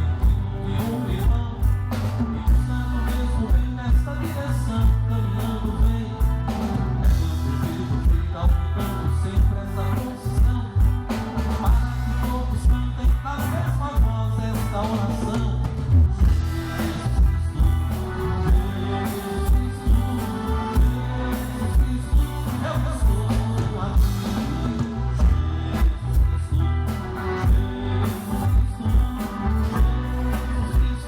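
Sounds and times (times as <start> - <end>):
bass line: 0.0 - 31.0
person singing: 0.0 - 31.0
drum beat: 15.8 - 31.0.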